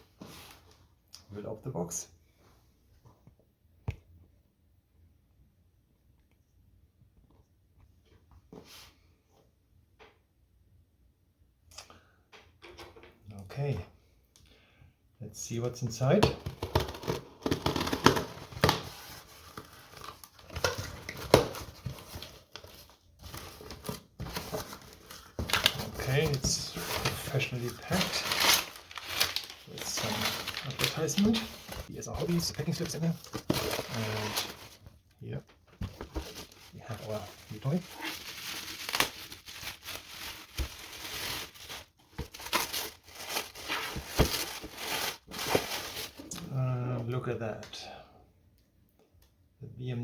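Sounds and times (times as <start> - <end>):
cardboard box being opened: 16.7 - 31.9, 32.8 - 34.8, 35.8 - 46.2
packing material rustling: 16.7 - 34.9, 35.8 - 46.4.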